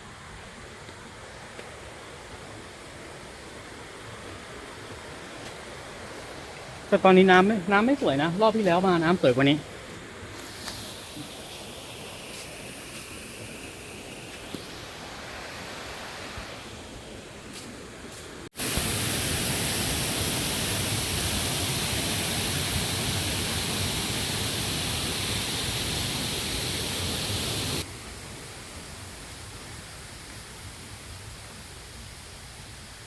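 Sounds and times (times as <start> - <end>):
waterfall rushing: 18.6 - 27.9.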